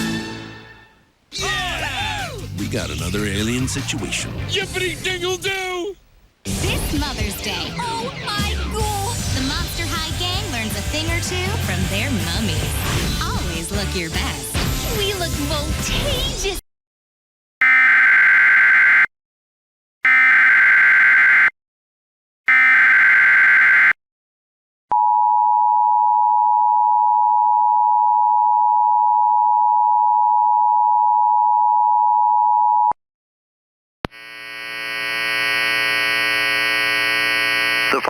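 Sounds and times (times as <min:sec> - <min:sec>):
buzzy drone: 0:34.2 - 0:37.9.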